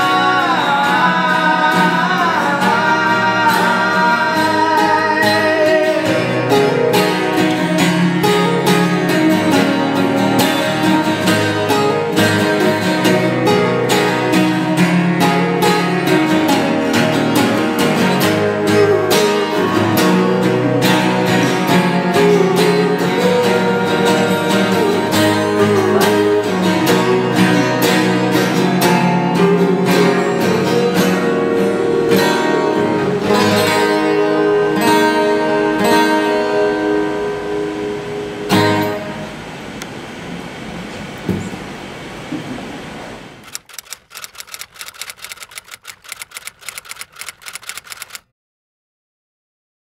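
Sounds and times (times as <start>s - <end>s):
strummed acoustic guitar: 0.0s - 39.7s.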